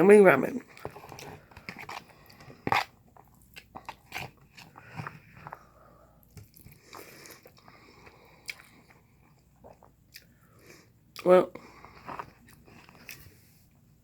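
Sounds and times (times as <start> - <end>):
chewing with wet mouth smacks: 6.3 - 10.4.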